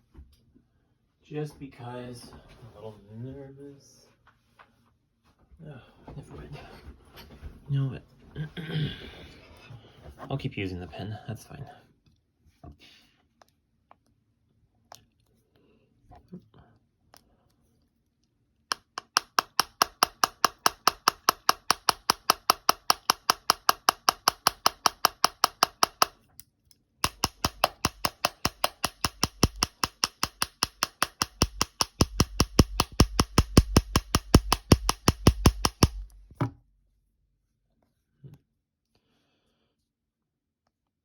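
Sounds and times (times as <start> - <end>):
pen tapping on phone screen: 18.7 - 26.2, 27.0 - 36.1.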